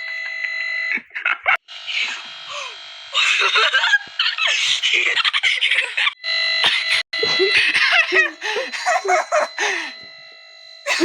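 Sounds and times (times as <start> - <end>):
distorted electronic buzzing: 0.0 - 8.2.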